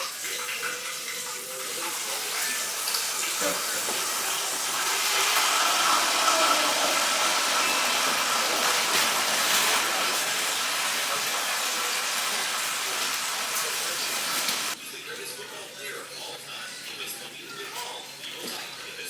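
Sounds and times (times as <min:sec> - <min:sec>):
water running from tap: 0:00.0 - 0:14.8.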